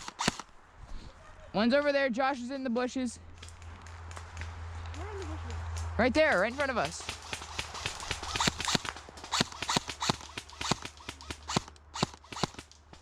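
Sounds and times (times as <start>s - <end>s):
airsoft gunfire snaps: 0.0s - 0.5s, 7.0s - 12.8s
pellets hitting a tree: 3.3s - 13.0s.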